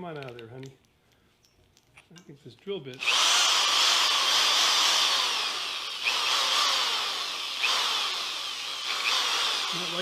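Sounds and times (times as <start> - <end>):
electric drill boring into steel: 3.0 - 10.0.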